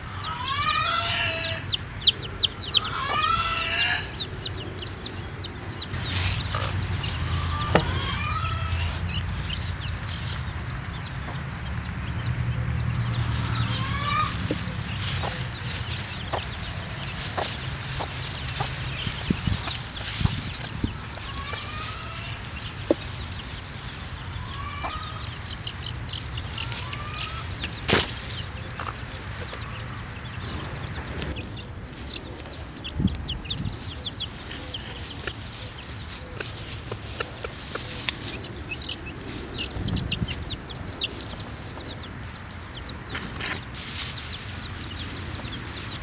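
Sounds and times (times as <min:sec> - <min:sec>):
baby chicks peeping: 0:00.0 - 0:46.0
chickens clucking: 0:00.0 - 0:46.0.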